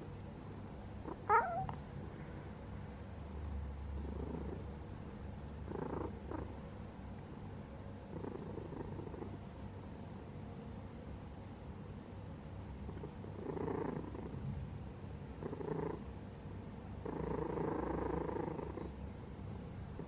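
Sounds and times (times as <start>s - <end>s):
cat purring: 0.0s - 2.5s, 3.1s - 7.4s, 8.0s - 9.5s, 12.8s - 20.0s
cat meowing: 1.2s - 1.8s.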